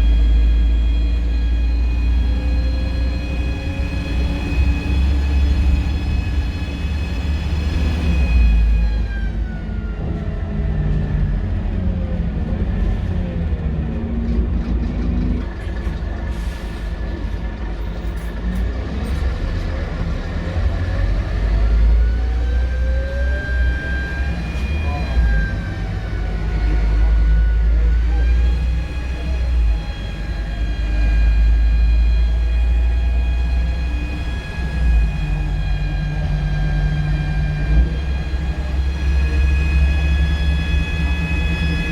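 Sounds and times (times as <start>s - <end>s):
bus engine rumble: 0.0s - 41.9s
drivetrain whine: 0.0s - 41.9s.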